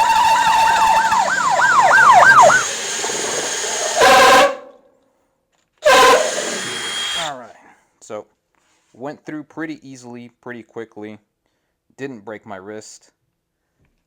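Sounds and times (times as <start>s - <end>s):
cordless drill boring through wood: 0.0s - 4.6s, 5.8s - 7.5s.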